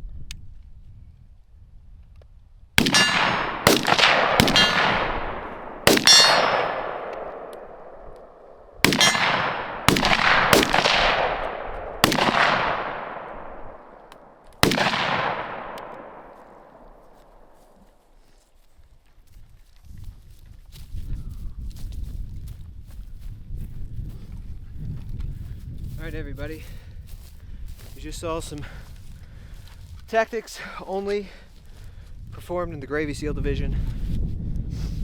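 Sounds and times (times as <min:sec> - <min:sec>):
gunshots with echoing tail: 0:02.8 - 0:17.6.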